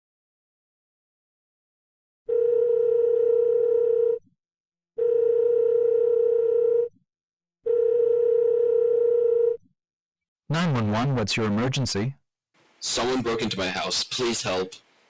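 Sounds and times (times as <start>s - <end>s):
telephone ringing tone: 2.3s - 4.2s, 5.0s - 6.9s, 7.7s - 9.5s.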